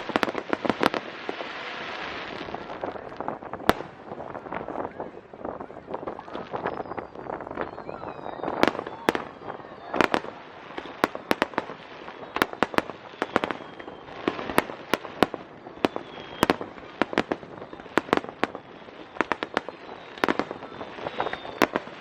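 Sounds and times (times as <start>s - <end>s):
fireworks bangs and pops: 0.0s - 22.0s.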